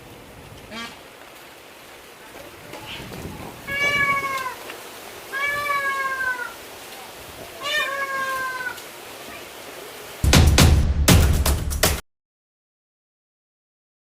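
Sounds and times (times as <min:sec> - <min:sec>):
animal calling: 0:02.8 - 0:06.7, 0:07.5 - 0:09.5.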